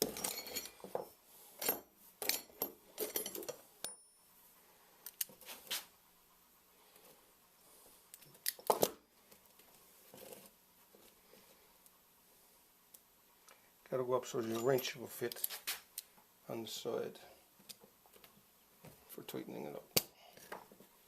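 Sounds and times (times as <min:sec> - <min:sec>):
metal parts clinking: 0:00.0 - 0:04.0, 0:14.4 - 0:15.6.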